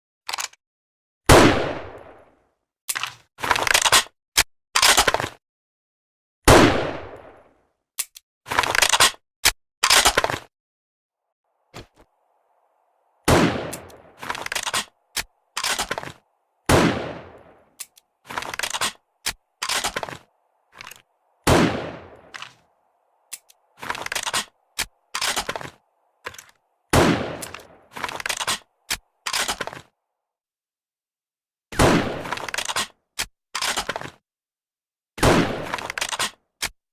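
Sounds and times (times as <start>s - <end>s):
rifle shots: 1.3s - 2.2s, 6.5s - 7.4s, 13.2s - 17.8s, 21.4s - 22.7s, 26.9s - 28.6s, 31.8s - 32.5s, 35.2s - 35.9s.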